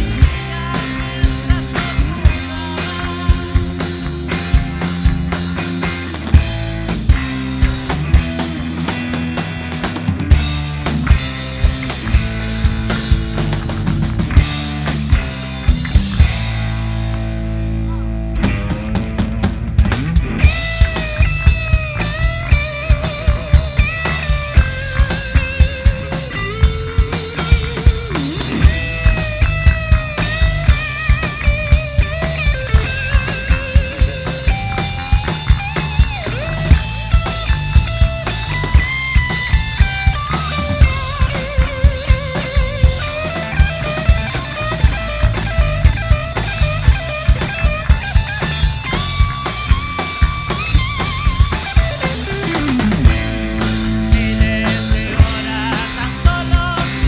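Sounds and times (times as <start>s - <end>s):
drum kit beat: 0.0s - 57.0s
rock band playing: 0.0s - 57.0s.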